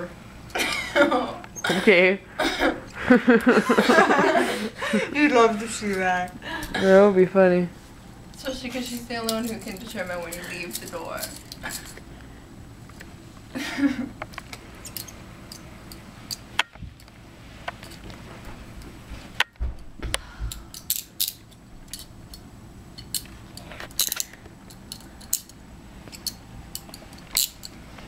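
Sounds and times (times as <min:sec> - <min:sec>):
handcuffs and keys clinking: 0:08.8 - 0:12.0, 0:14.8 - 0:15.6, 0:20.7 - 0:22.4, 0:23.0 - 0:27.8.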